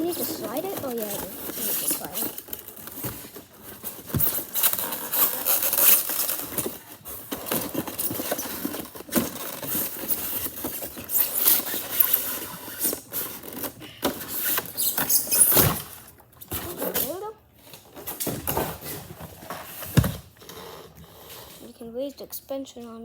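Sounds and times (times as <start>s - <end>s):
device rubbing and scraping: 0.0s - 6.6s.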